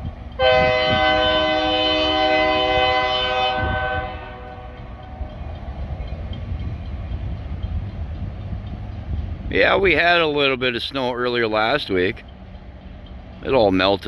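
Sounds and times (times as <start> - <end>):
train rumble: 0.0 - 14.0
locomotive air horn chord: 0.4 - 5.3.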